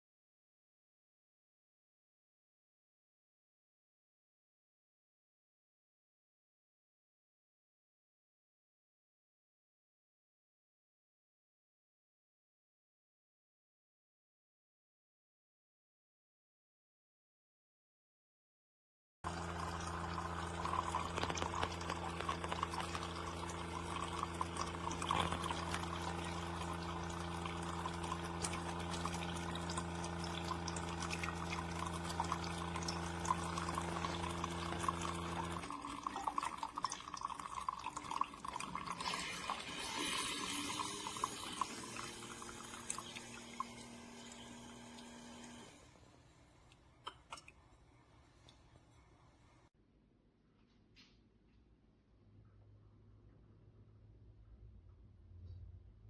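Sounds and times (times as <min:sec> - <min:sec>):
liquid pouring into cup: 0:19.3 - 0:45.8
coffee trickling and sputtering: 0:19.3 - 0:49.4
coffee maker pump humming: 0:19.3 - 0:49.6.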